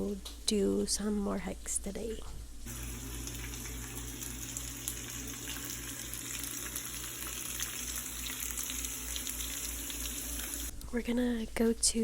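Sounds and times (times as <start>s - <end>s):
food sizzling in a frying pan: 2.7s - 10.7s.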